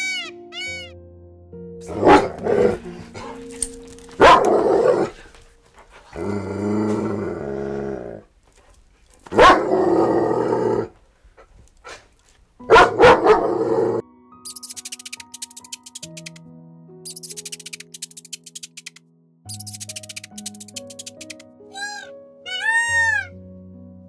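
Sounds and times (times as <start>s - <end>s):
dog barking: 1.9s - 3.4s, 4.2s - 4.9s, 9.3s - 9.7s, 12.6s - 13.7s
dog growling low: 6.1s - 8.3s.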